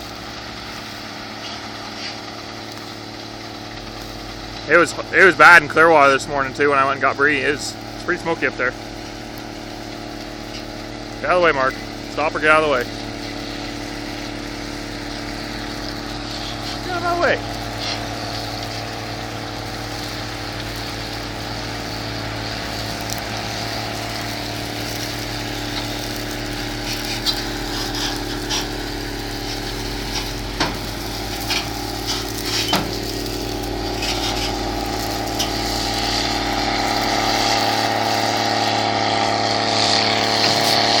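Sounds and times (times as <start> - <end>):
harvest machinery engine: 0.0 - 41.0.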